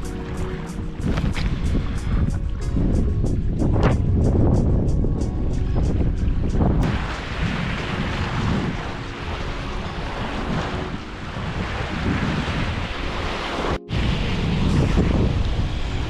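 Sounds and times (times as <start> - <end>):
lake waves washing on shore: 0.0 - 16.0
wind buffeting microphone: 0.0 - 16.0.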